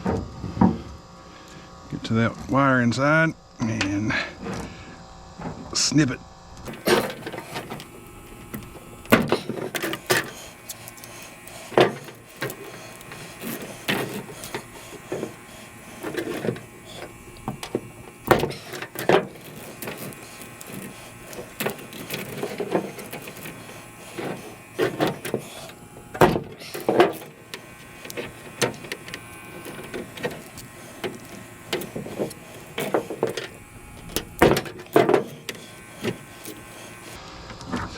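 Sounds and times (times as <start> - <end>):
handling rustle: 6.6 - 37.2
snips cutting cable: 8.5 - 37.2.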